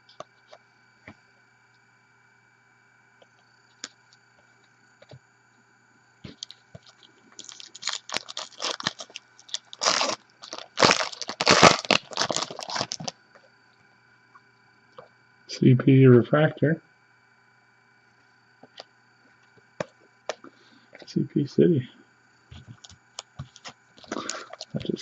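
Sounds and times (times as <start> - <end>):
wrapper tearing and crinkling: 6.3 - 13.2, 24.0 - 24.8.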